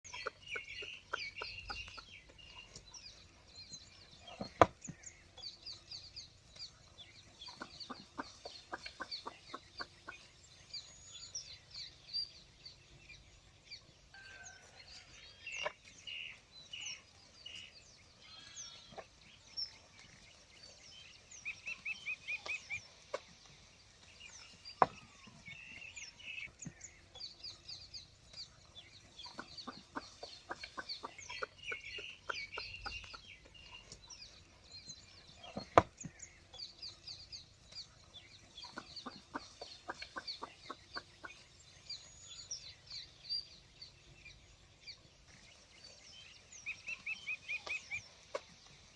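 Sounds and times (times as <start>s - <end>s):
hen clucking: 0.0s - 2.9s, 7.2s - 10.4s, 29.1s - 34.1s, 38.5s - 41.5s
birds chirping: 0.0s - 48.9s.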